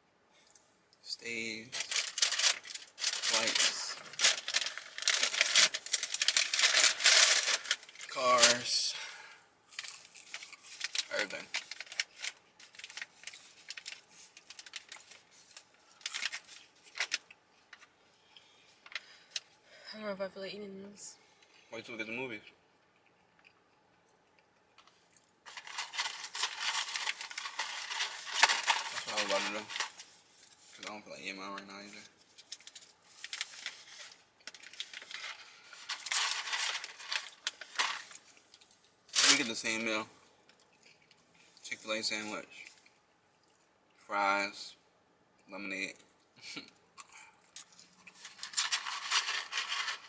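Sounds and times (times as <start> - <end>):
paper packaging crinkling: 1.7 - 8.6, 9.7 - 17.9, 25.4 - 31.0, 31.6 - 40.0, 47.6 - 50.0.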